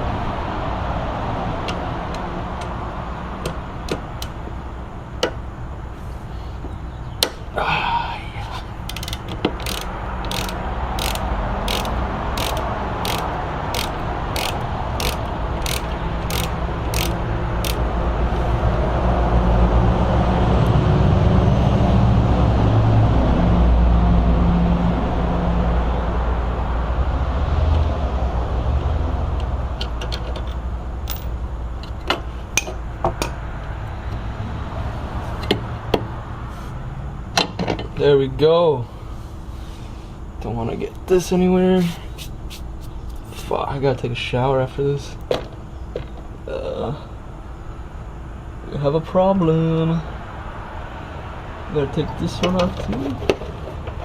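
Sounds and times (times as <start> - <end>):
ratchet wrench clicking: 8.8 - 17.9, 29.8 - 31.3
tool knocks: 45.3 - 46.3.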